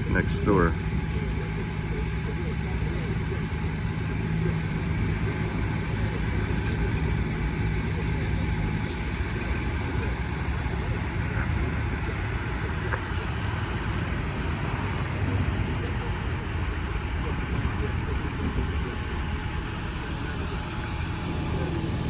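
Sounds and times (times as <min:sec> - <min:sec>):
low rumble of machinery: 0:00.0 - 0:22.0
steady hum: 0:00.0 - 0:22.0.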